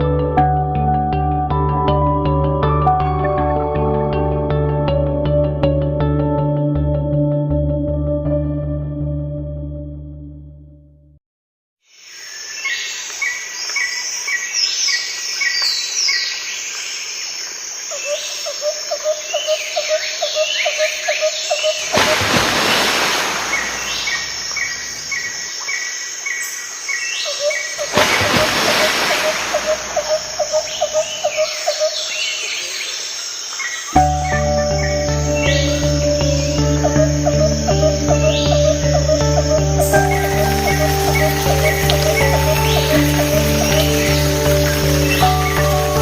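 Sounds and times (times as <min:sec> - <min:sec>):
birds chirping and trilling: 0:12.2 - 0:46.0.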